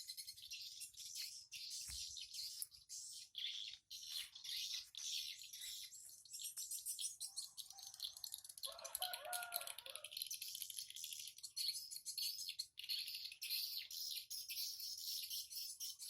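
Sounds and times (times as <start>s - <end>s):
faint rooster crowing: 7.6s - 10.2s.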